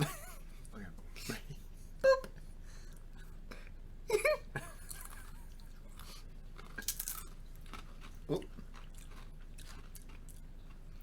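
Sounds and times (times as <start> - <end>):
chewing crunchy chips: 4.8 - 11.0.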